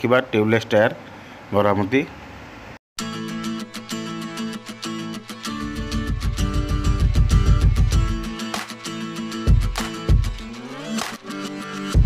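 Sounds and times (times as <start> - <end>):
strummed guitar music: 3.0 - 12.0.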